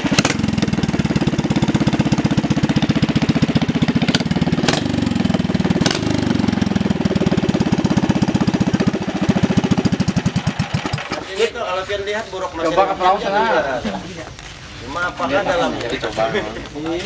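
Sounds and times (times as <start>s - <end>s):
small boat engine running: 0.0s - 11.1s.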